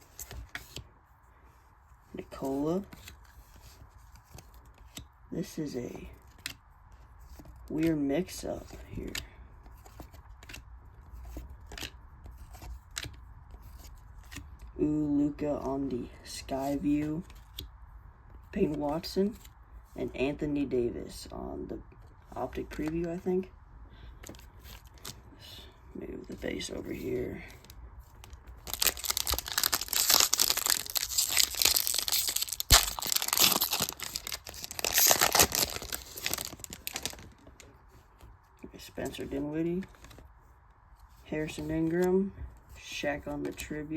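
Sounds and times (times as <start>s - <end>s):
trading cards being flipped: 27.6s - 37.3s
plastic wrapper crinkling: 27.6s - 37.6s.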